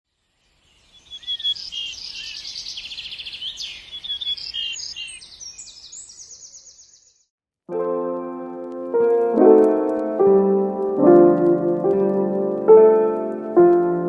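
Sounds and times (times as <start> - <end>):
birds chirping and trilling: 0.2 - 7.3.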